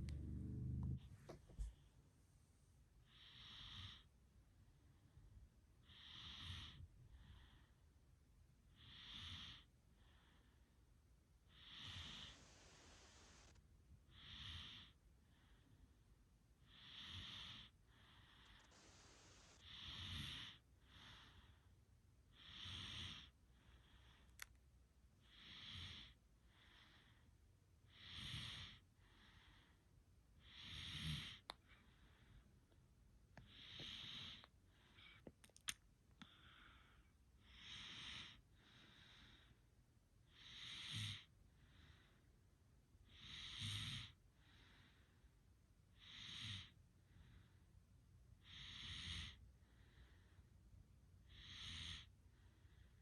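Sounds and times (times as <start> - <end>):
soft snoring: 0.0 - 1.8, 3.1 - 4.1, 5.8 - 7.8, 8.8 - 10.6, 11.5 - 15.7, 16.7 - 21.7, 22.3 - 24.5, 25.2 - 27.2, 27.9 - 29.8, 30.4 - 32.4, 33.4 - 35.3, 36.2 - 39.6, 40.3 - 42.2, 43.1 - 45.1, 46.0 - 47.6, 48.4 - 50.4, 51.2 - 53.0.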